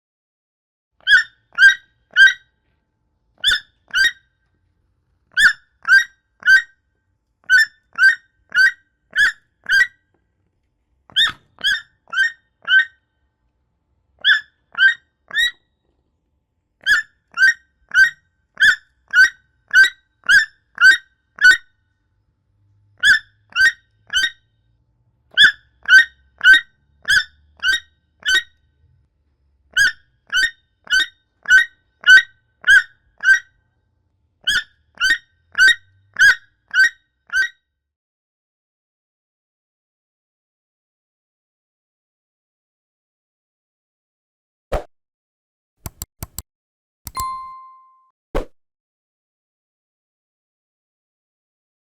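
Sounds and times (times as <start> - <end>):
toucan calling: 1.0 - 2.5, 3.4 - 4.2, 7.5 - 9.9, 11.1 - 13.0.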